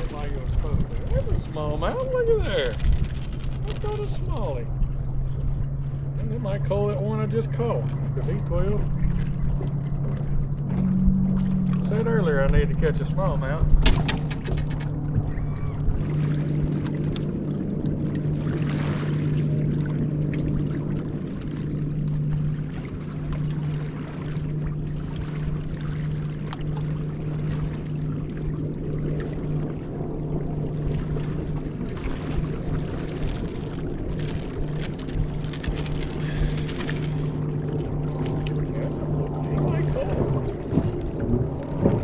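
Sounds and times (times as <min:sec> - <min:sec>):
boat motor humming: 0:00.0 - 0:42.0
light rustling: 0:32.9 - 0:37.9.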